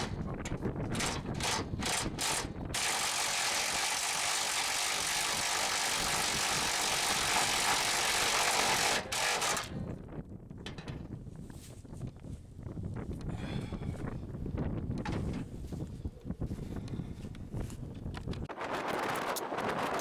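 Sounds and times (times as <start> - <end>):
hand ratchet wrench ratcheting: 0.9 - 9.7.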